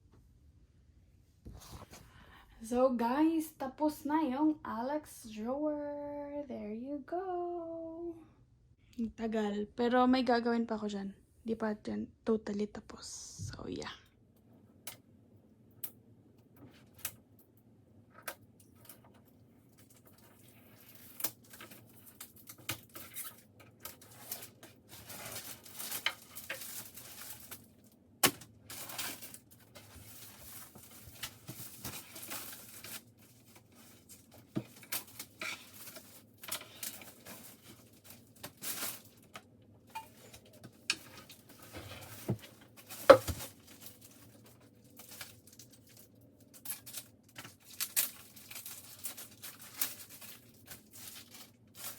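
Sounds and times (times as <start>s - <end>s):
packaging rustling and tearing: 18.8s - 51.9s.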